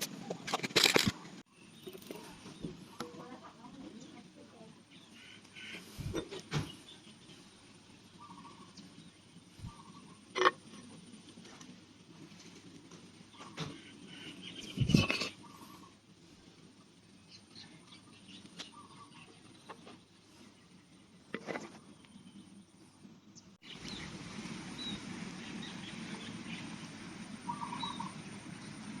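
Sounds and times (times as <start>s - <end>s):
small birds chirping: 1.2s - 29.0s
background hiss: 22.0s - 29.0s.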